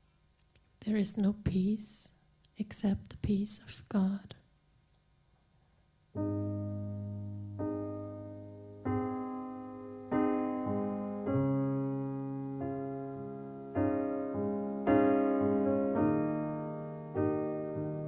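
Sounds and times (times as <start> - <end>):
slow piano chords: 6.2 - 18.0.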